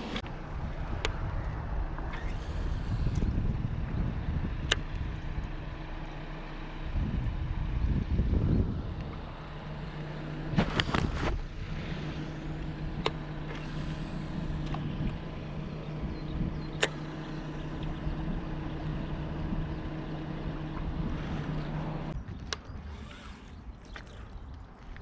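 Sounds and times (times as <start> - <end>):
motor humming: 0.0 - 25.0
sharp clicks: 16.2 - 18.2.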